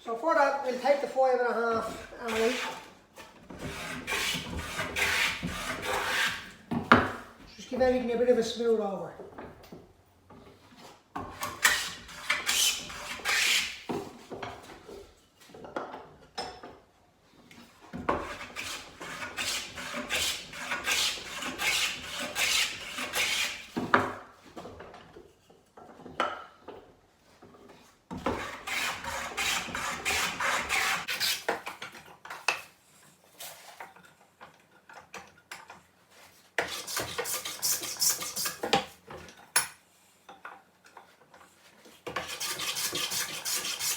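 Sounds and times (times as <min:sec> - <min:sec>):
hand plane shaving wood: 0:01.8 - 0:06.6, 0:11.4 - 0:13.8, 0:18.2 - 0:23.8, 0:28.2 - 0:31.5, 0:36.6 - 0:38.7, 0:42.1 - 0:43.9.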